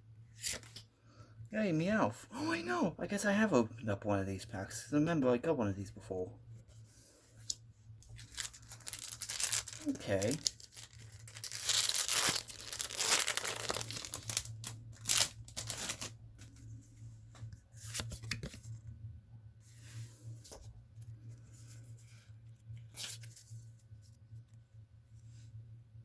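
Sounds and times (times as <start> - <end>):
cards rustling and clicking: 0.4 - 0.9, 7.4 - 16.7, 17.3 - 18.8
foil wrapper tearing and crinkling: 8.0 - 16.2.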